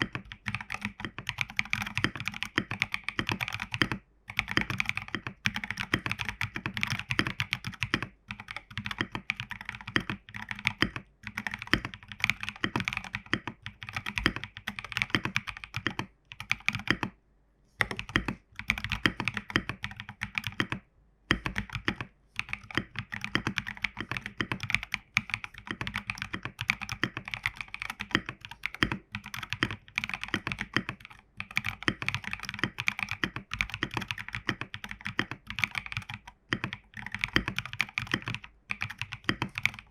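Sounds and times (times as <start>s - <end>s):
mechanical keyboard typing: 0.0s - 17.2s, 17.8s - 39.9s.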